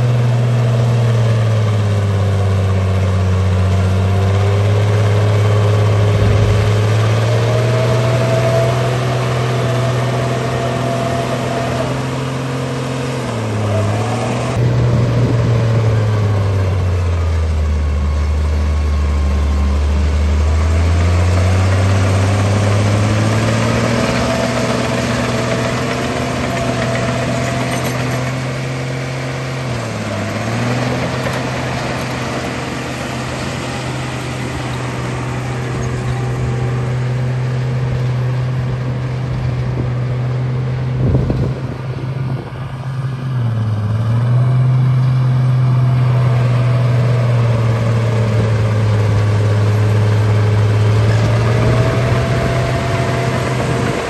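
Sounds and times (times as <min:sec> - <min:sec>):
bulldozer engine running: 0:00.0 - 0:54.0.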